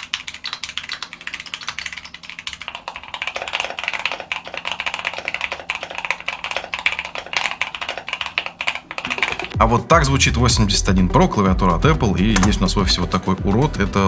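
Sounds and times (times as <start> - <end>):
mechanical keyboard typing: 0.0 - 9.6.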